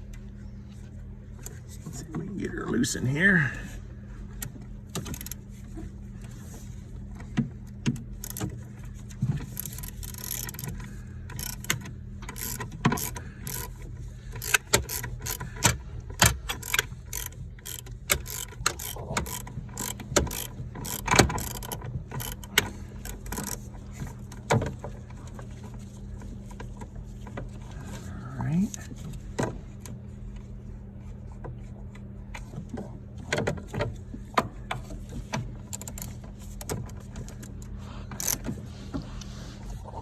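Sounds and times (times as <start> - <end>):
steady low hum: 0.0 - 40.0
ratchet wrench clicking: 5.0 - 5.4, 8.2 - 8.6, 9.4 - 13.8, 14.4 - 23.6, 35.7 - 36.8, 38.2 - 38.4.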